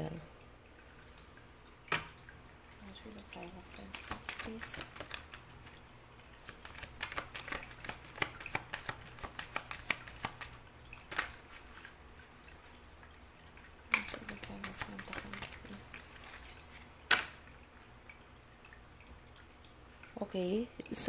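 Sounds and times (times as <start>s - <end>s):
cards being shuffled: 3.8s - 5.5s, 6.5s - 11.8s, 13.9s - 17.3s.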